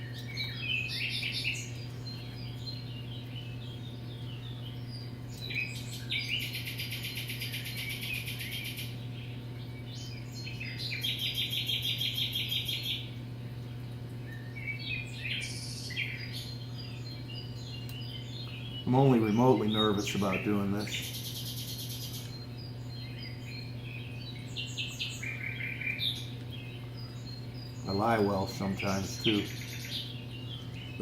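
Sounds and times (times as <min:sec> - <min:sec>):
bird rapid trills: 0:00.0 - 0:09.4, 0:15.0 - 0:31.0
birds chirping and singing: 0:00.0 - 0:31.0
steady low hum: 0:00.0 - 0:31.0.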